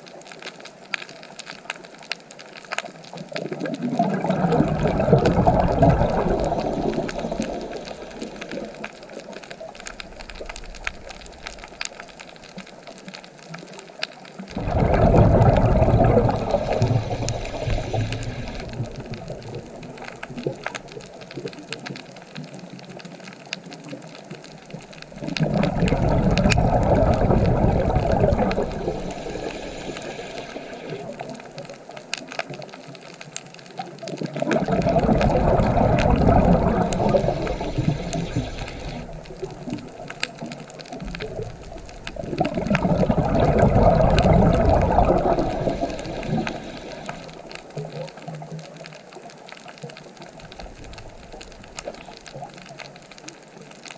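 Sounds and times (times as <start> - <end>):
ocean waves breaking: 4.0 - 9.2, 14.5 - 20.8, 25.1 - 31.4, 34.5 - 47.6.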